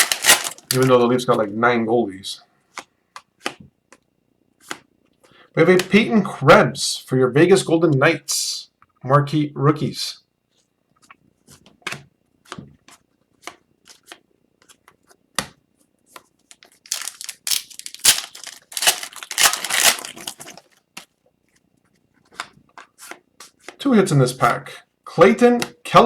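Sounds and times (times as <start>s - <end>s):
cards clicking and sliding: 0.0s - 1.0s, 16.5s - 21.1s
wrapper tearing and crinkling: 0.0s - 1.0s, 16.5s - 20.7s.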